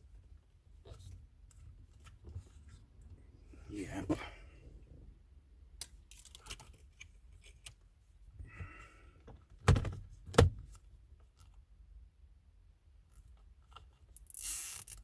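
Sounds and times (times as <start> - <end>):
light clicks and rustling of parts: 5.8 - 7.9.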